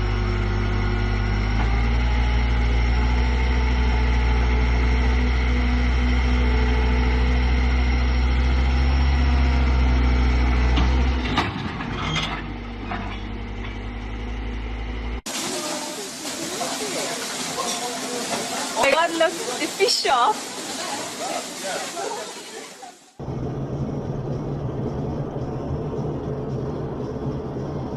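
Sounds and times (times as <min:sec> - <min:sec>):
heavy vehicle engine droning: 0:00.0 - 0:16.9, 0:23.1 - 0:27.9.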